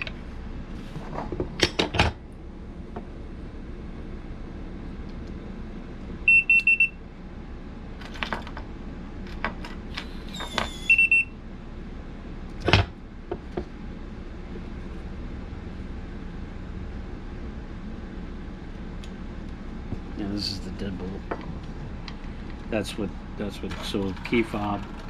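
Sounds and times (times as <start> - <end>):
door lock beeping: 10.4 - 11.3.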